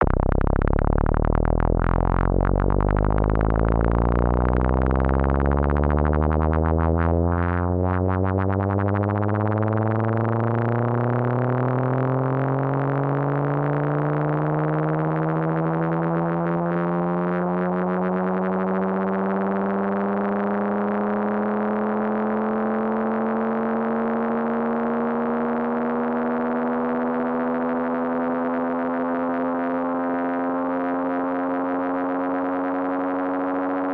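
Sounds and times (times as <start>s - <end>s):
synthetic race car engine tone: 0.0s - 26.9s.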